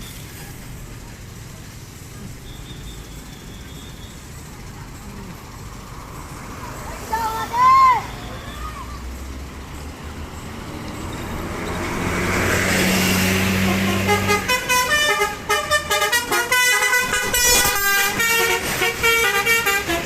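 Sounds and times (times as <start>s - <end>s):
bus engine and tyre noise: 0.0s - 20.0s
musical bus horn tune: 12.6s - 20.0s.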